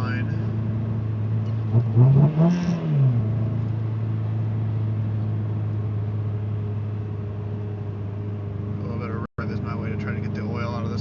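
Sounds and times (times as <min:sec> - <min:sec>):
misfiring car engine revving: 0:00.0 - 0:06.3.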